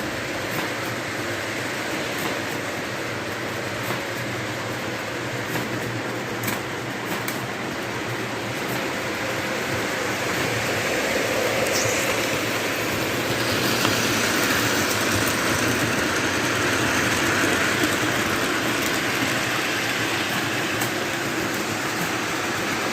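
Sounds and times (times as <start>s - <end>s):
toy train rolling on track: 7.9s - 22.9s.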